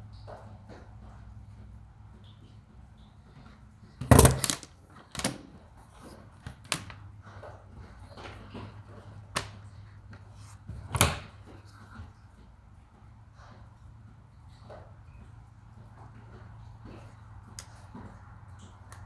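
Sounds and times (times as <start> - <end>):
small tools clicking and knocking: 4.0 - 5.5.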